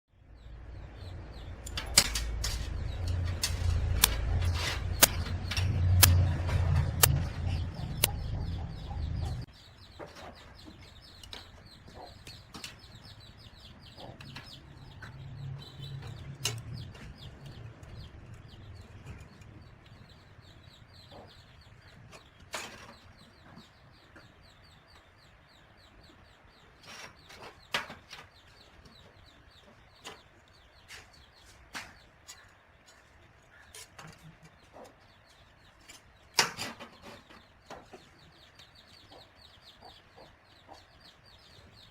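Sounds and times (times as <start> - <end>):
loud low hum: 0.5 - 9.4.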